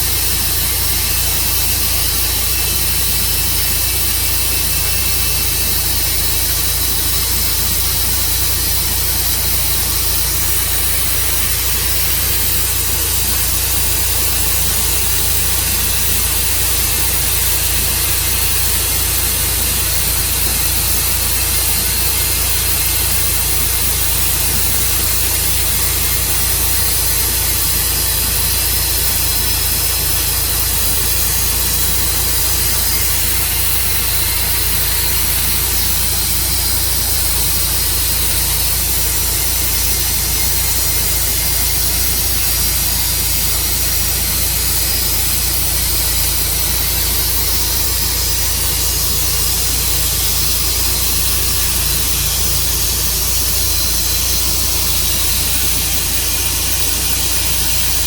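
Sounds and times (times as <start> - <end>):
saw hiss: 0.0 - 58.0
sawmill engine hum: 0.0 - 58.0.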